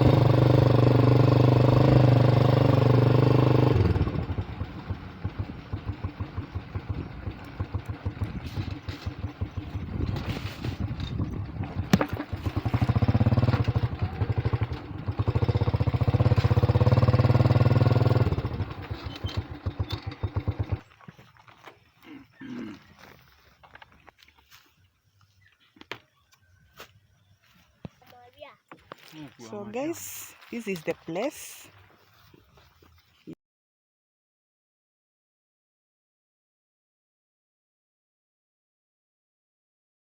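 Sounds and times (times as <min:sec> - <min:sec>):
motorbike engine running: 0:00.0 - 0:20.9.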